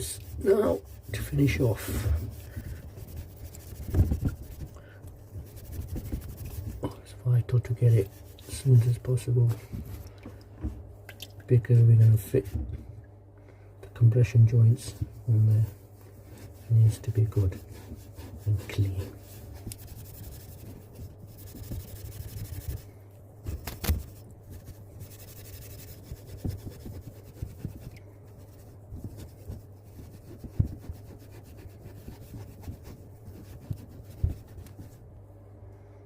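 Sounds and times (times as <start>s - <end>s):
wire wool scrubbing copper pipe: 0.0s - 9.4s, 14.5s - 35.0s.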